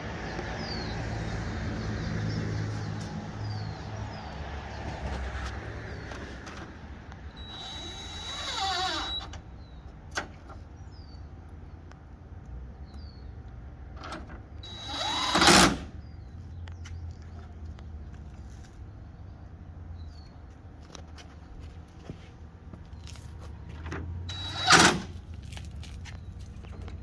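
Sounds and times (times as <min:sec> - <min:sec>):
power drill motor whining: 0:07.3 - 0:09.4, 0:14.6 - 0:16.0, 0:24.3 - 0:25.2.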